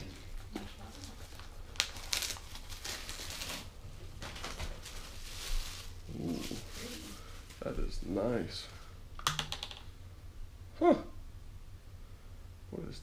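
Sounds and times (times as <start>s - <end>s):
packaging rustling and crinkling: 0.0s - 7.8s.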